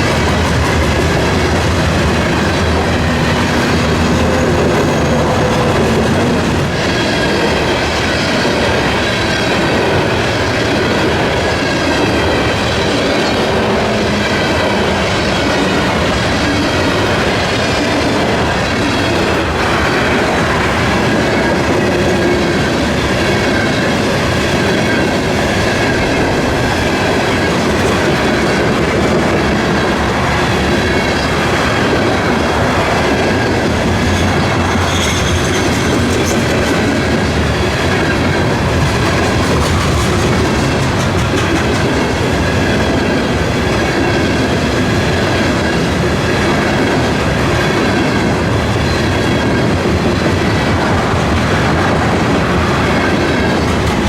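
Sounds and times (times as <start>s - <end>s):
railroad cars rumbling past: 0.0s - 54.0s
high wheel squeal: 33.4s - 36.4s.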